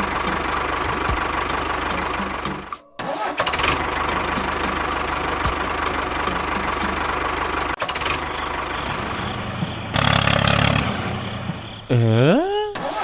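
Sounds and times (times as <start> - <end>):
engine running with fast pulse: 0.0 - 2.8.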